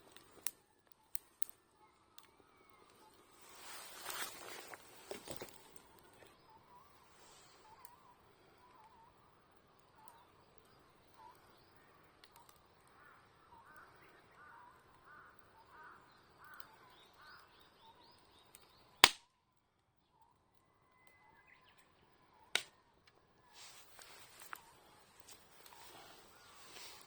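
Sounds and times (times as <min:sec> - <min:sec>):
birds chirping: 0:00.0 - 0:27.0
loud sharp crack: 0:19.0 - 0:19.2, 0:22.5 - 0:22.8
background hiss: 0:23.4 - 0:27.0.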